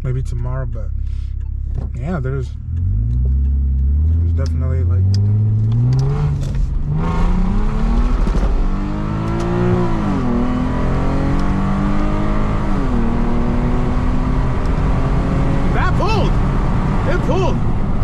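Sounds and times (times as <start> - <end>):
car engine accelerating hard: 0.0 - 18.0.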